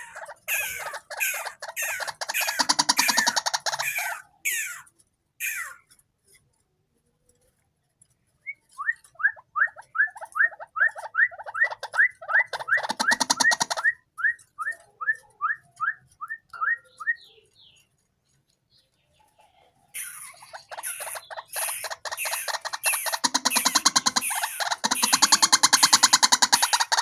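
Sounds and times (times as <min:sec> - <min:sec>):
rapid rattling: 0:00.0 - 0:04.1, 0:11.8 - 0:13.8, 0:20.4 - 0:27.0
waterhen calling: 0:00.0 - 0:04.8, 0:20.0 - 0:27.0.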